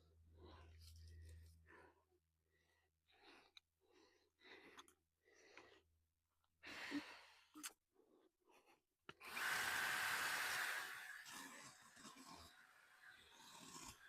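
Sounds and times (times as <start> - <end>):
power tool motor running: 9.2 - 14.0.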